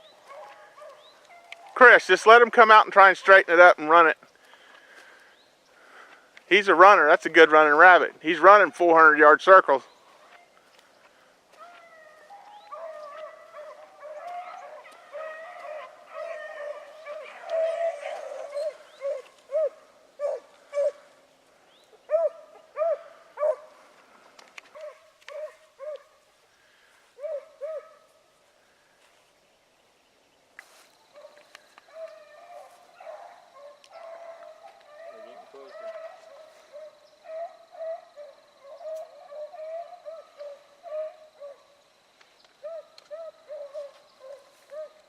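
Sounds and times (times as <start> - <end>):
dogs baying: 0.1 - 1.9, 11.5 - 21.2, 21.9 - 24.0, 24.6 - 26.3, 27.2 - 28.1, 31.1 - 41.8, 42.6 - 45.0.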